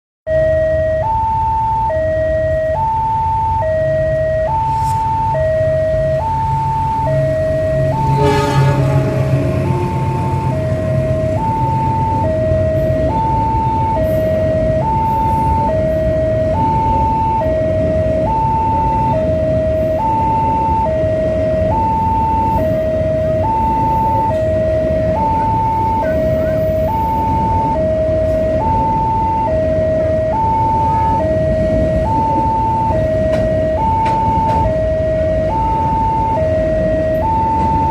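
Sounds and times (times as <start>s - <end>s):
level crossing two-tone alarm: 0.3s - 37.9s
low rumble: 7.0s - 12.7s.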